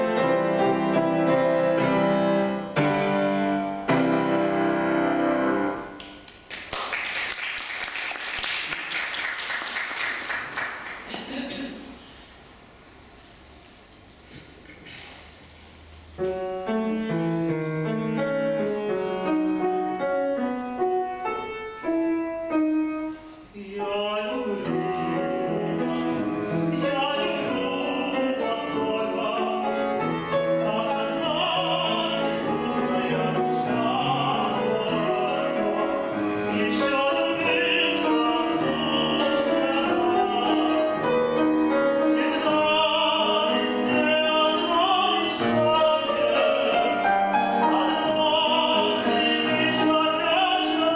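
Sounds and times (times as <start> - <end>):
piano playing: 0.0 - 6.3, 16.0 - 50.9
man singing operatically: 23.5 - 50.9.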